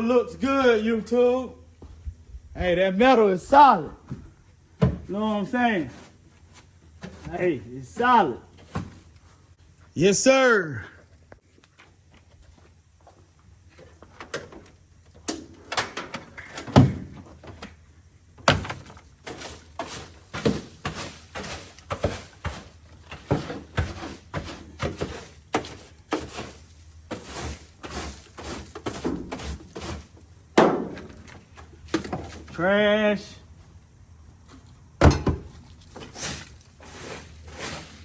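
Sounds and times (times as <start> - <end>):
trash knocking and rustling: 18.4 - 32.6, 34.4 - 38.0.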